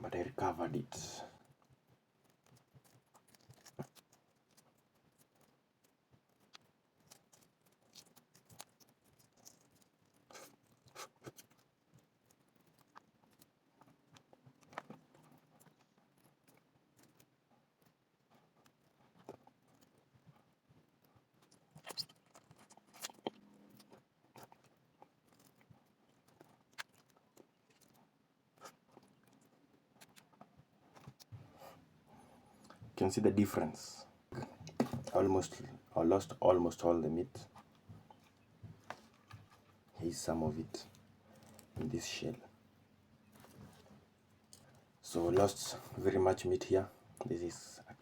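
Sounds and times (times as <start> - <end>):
eggshell crackling as peeled: 1.4 - 20.1, 20.9 - 31.3.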